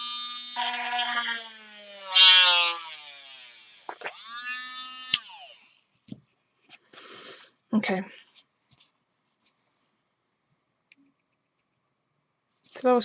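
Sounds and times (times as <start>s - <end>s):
rotary tool drilling: 0.0s - 5.8s.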